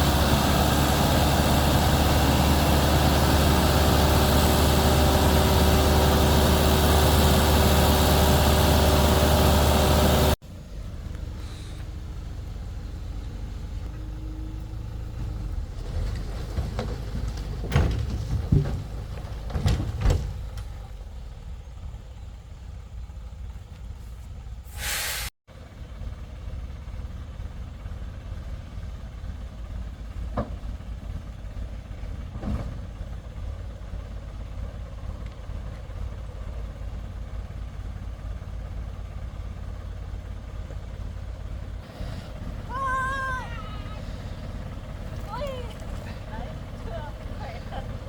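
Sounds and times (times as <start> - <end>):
engine rumbling: 0.0 - 48.0
burst of hiss: 24.6 - 25.4.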